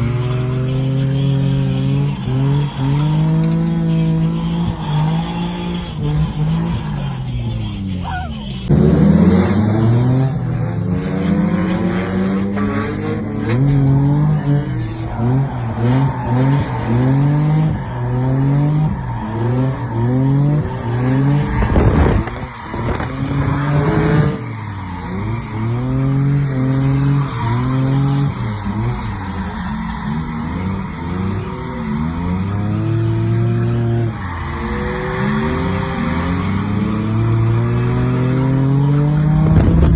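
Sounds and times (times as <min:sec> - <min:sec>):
tyres squealing and skidding: 0:00.0 - 0:39.9
car engine revving hard: 0:08.6 - 0:39.9.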